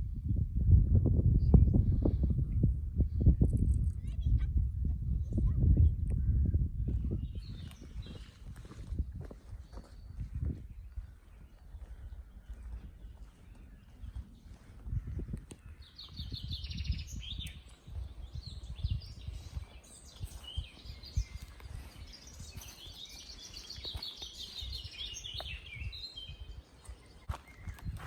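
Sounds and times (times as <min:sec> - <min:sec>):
songbird trilling: 0:10.9 - 0:28.0.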